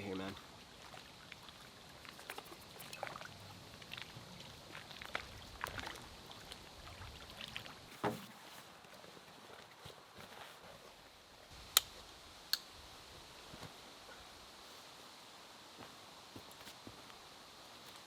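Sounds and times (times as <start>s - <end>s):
small water splashes: 0.3s - 8.5s
lake water lapping: 0.3s - 9.9s.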